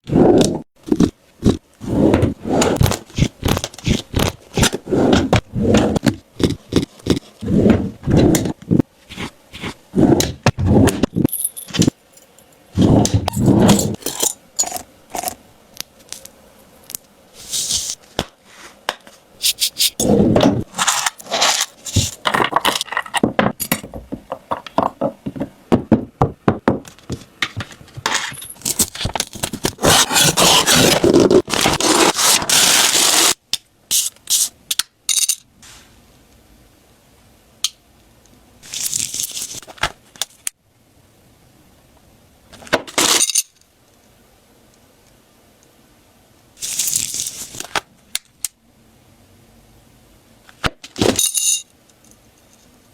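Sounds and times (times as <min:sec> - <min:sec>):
wrapping crinkling and rustling: 0:38.6 - 0:39.8, 0:46.6 - 0:47.7.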